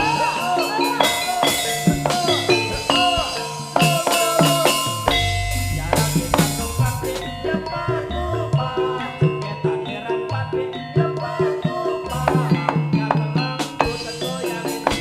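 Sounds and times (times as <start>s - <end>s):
drums: 0.0s - 9.9s, 10.8s - 15.0s
ringing struck percussion: 0.0s - 15.0s
deep bass rumble: 5.1s - 9.3s.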